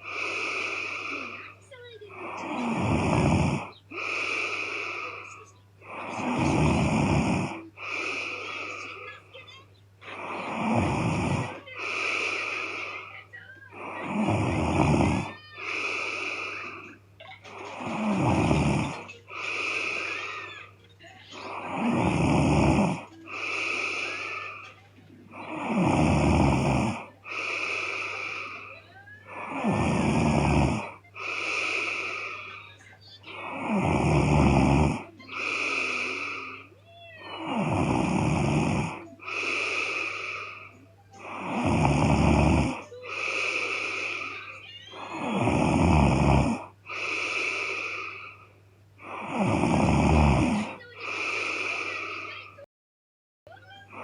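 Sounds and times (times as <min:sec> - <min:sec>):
breathy exhale: 0:00.0 - 0:01.6, 0:10.1 - 0:13.1, 0:13.8 - 0:17.0, 0:17.7 - 0:20.5, 0:21.4 - 0:32.6, 0:33.3 - 0:45.9, 0:46.5 - 0:49.8, 0:50.5 - 0:52.5
woman snoring: 0:00.0 - 0:52.7, 0:53.8 - 0:54.0.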